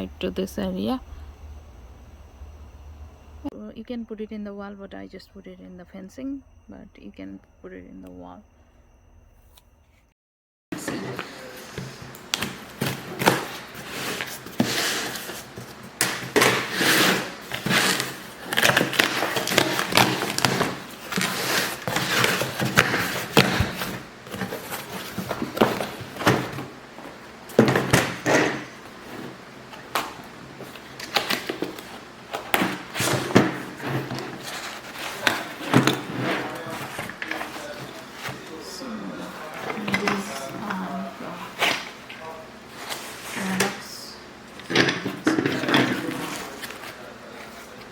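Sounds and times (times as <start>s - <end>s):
objects being handled: 10.8s - 43.9s.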